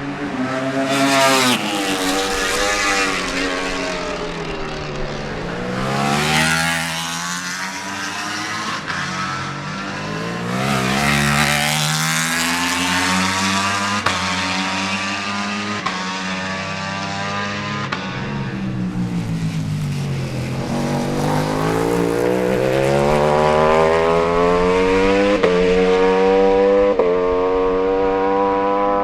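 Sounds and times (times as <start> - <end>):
superbike engines at high revs: 0.3 - 29.0.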